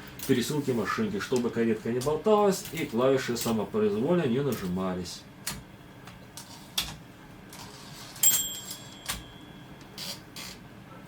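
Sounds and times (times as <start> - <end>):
typewriter carriage bell ding: 8.2 - 9.8.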